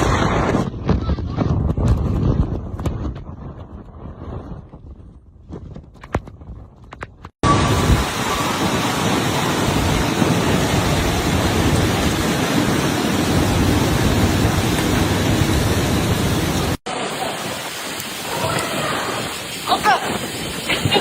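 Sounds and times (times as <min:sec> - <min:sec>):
wind: 0:00.0 - 0:21.0
heavy rain pouring: 0:07.4 - 0:21.0.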